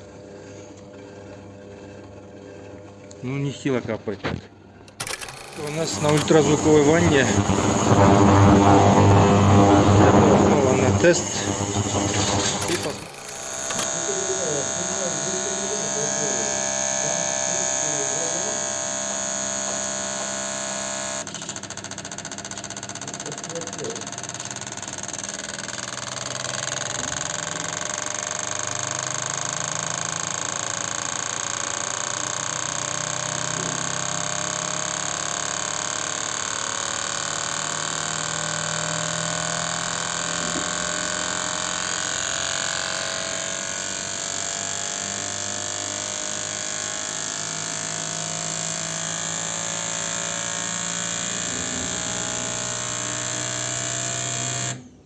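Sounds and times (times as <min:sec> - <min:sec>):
faint rising whine: 0:05.6 - 0:13.1
test stand mechanical hum and hiss: 0:05.6 - 0:13.1.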